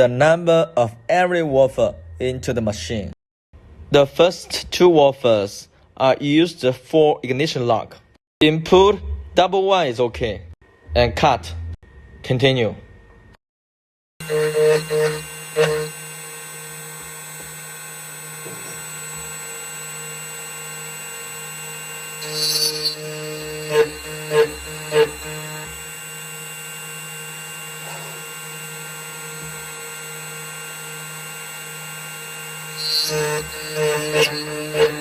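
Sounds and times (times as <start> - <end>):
key cutting machine milling: 14.2 - 35.0.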